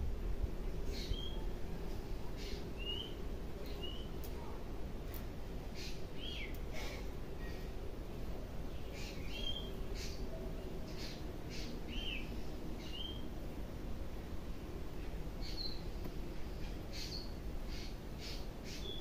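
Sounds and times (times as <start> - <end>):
steady low background noise: 0.0 - 19.0
birds chirping: 0.8 - 1.6, 2.3 - 4.5, 5.7 - 7.7, 8.6 - 13.3, 15.4 - 19.0.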